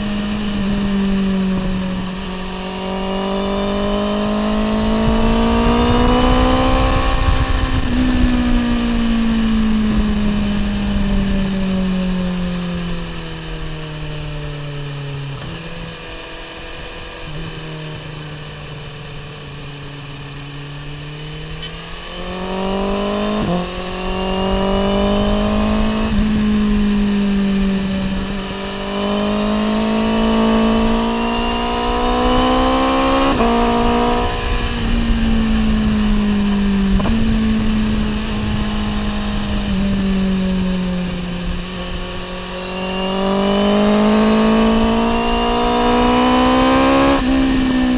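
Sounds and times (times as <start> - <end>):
motorcycle engine accelerating: 0.0 - 47.9.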